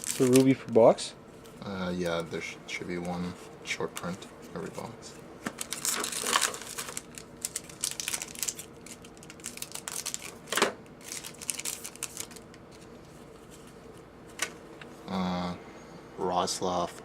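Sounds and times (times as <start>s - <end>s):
cards and foil wrappers crinkling: 0.0s - 0.8s, 4.0s - 13.1s.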